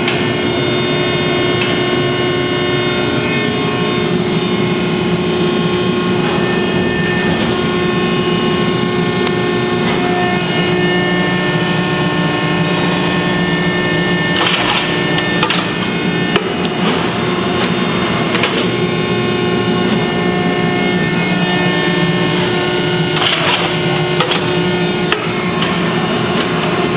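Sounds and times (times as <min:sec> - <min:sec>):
baler hydraulic hum: 0:00.0 - 0:26.9
knocks and clanks: 0:14.0 - 0:20.1, 0:23.0 - 0:26.9.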